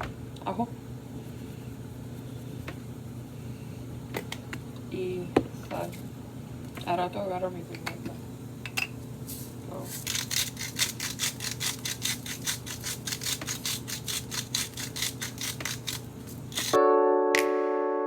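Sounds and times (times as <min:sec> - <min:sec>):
low steady hum: 0:00.0 - 0:16.8
synth piano music chords: 0:16.8 - 0:18.0.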